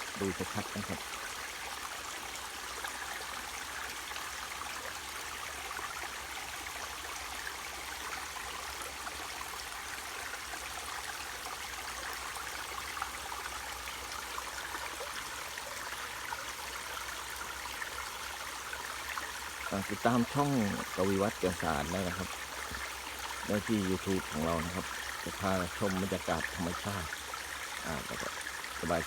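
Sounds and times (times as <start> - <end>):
waterfall rushing and splashing: 0.0 - 1.2, 18.4 - 29.0.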